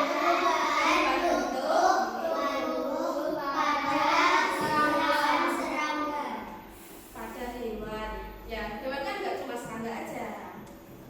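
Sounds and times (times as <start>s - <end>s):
children singing together: 0.0s - 6.1s.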